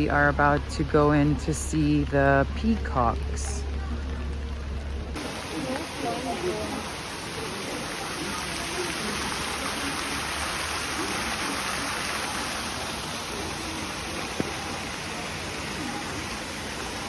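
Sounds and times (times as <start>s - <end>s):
faint voices: 0.0s - 17.0s.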